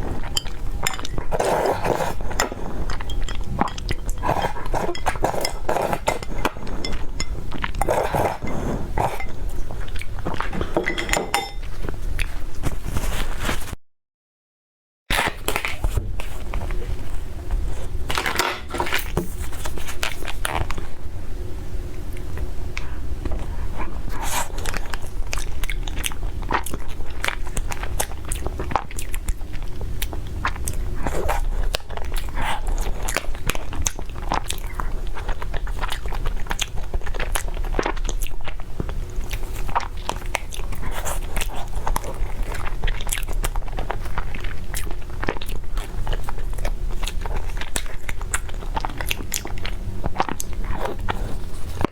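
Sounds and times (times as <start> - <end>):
person crunching and chewing food: 0.0 - 10.8, 23.4 - 51.9.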